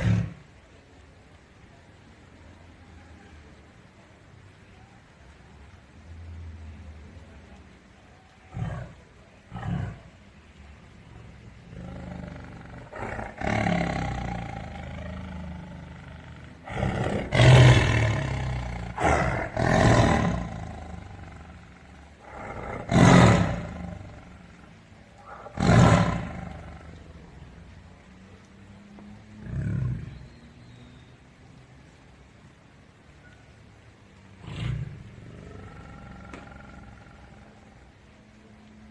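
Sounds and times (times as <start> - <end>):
tiger roaring and growling: 0.0 - 0.4, 8.5 - 10.2, 11.5 - 27.1, 29.3 - 30.2, 34.4 - 38.0.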